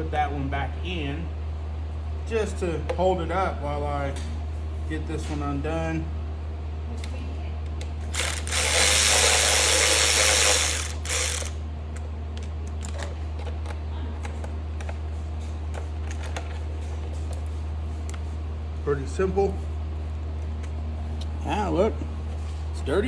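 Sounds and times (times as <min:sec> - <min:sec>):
cordless ratchet running: 0:08.1 - 0:11.6.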